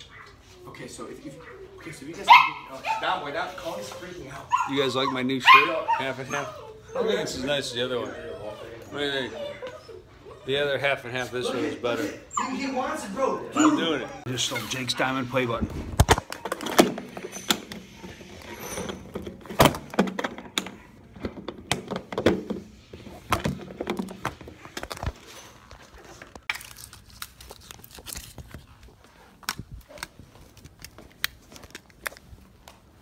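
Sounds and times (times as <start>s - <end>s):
objects being handled and set down: 15.6s - 26.7s.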